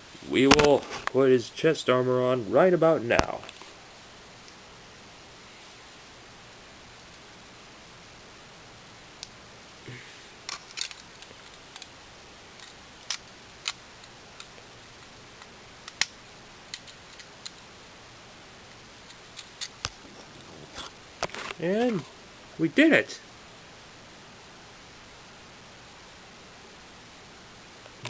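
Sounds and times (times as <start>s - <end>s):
steady low hiss: 0.0s - 28.0s
plastic pieces clicking together: 10.5s - 11.9s.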